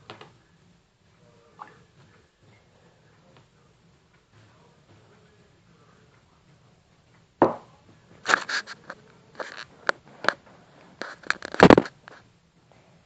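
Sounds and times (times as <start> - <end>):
rustling scrapes: 8.2 - 12.3.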